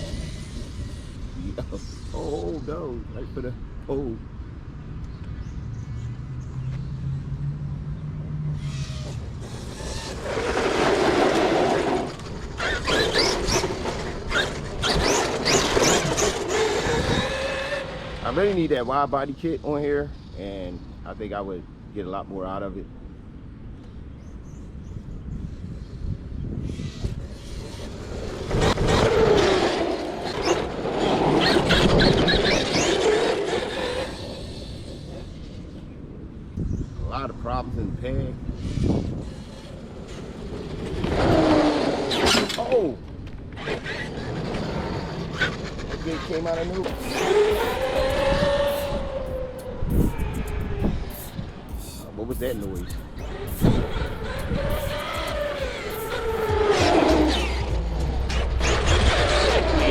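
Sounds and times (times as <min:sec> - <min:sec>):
tyre and ground noise: 0:04.9 - 0:19.7, 0:26.4 - 0:36.9, 0:37.7 - 0:59.9
electric motor whining: 0:08.6 - 0:18.5, 0:46.3 - 0:59.9
tires scrubbing and squealing: 0:08.6 - 0:18.8, 0:26.7 - 0:35.8, 0:38.5 - 0:59.9.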